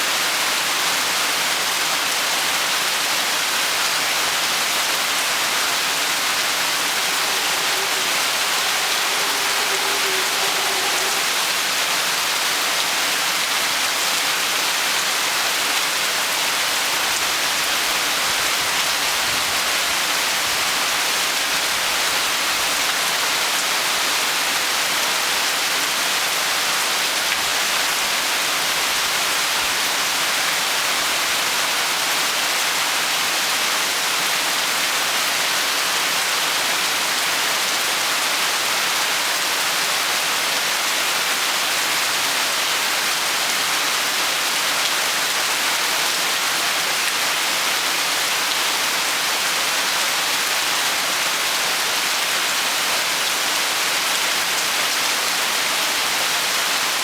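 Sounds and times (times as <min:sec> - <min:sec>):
heavy rain hissing: 0:00.0 - 0:15.6.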